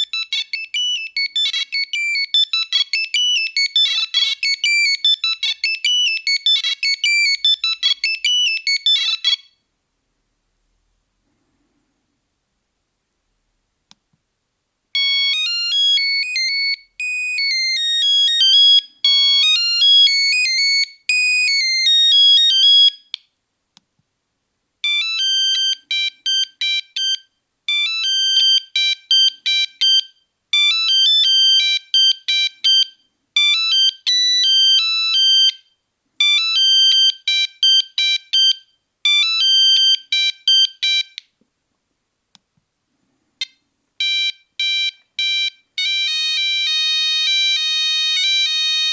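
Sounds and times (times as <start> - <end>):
monophonic ringtone melody: 0.0 - 9.5, 15.0 - 23.0.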